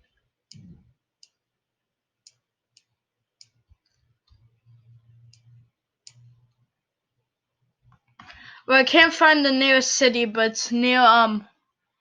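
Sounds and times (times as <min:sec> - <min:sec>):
faint low hum: 0:00.0 - 0:09.4
computer mouse clicks: 0:00.5 - 0:01.4, 0:02.2 - 0:06.7.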